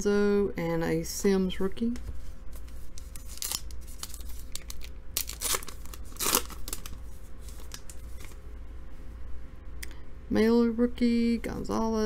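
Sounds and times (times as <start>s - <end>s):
wrapper tearing and crinkling: 3.0s - 8.4s.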